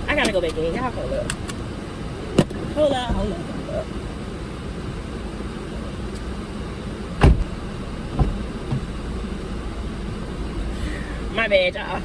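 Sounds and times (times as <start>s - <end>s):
car engine idling: 0.0s - 12.0s
car door shutting: 7.2s - 9.6s.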